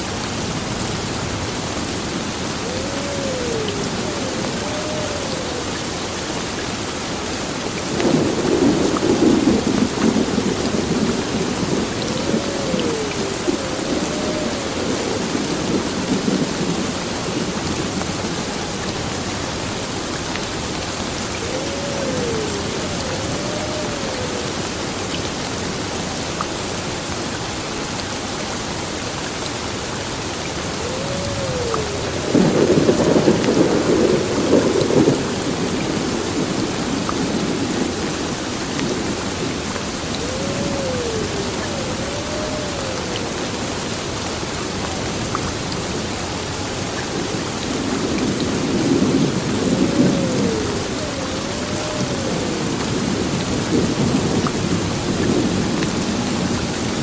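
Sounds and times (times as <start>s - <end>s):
heavy rain falling: 0.0s - 57.0s
thunder rumbling: 8.0s - 19.0s, 21.2s - 24.7s, 30.7s - 43.8s, 47.1s - 57.0s.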